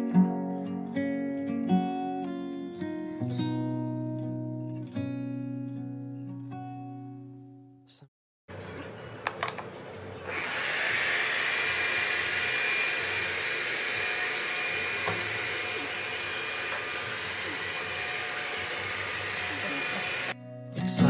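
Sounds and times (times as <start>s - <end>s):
robot vacuum whirring: 10.2s - 20.4s.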